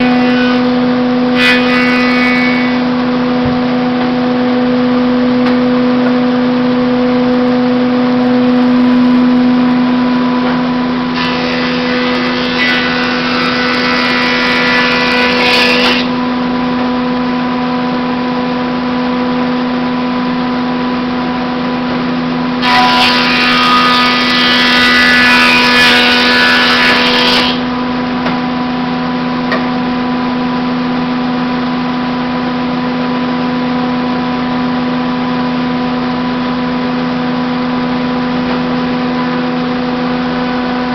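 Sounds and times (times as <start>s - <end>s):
boards passing through planer: 0.0s - 16.1s, 22.6s - 28.5s
planer humming: 1.4s - 14.6s.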